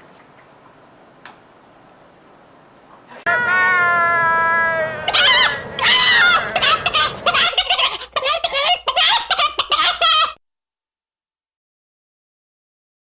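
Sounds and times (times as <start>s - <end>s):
turkey gobbling: 4.9s - 10.3s.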